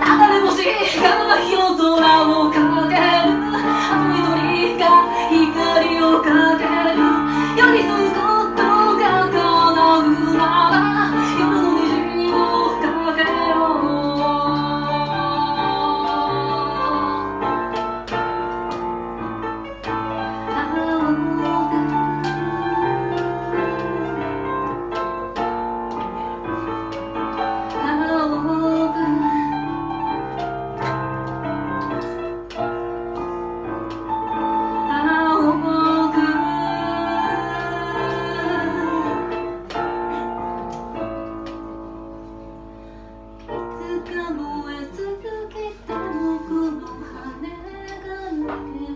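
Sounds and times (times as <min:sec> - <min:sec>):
person singing: 0:00.0 - 0:17.7, 0:20.3 - 0:25.3, 0:34.4 - 0:39.6
piano accompaniment: 0:00.0 - 0:48.9.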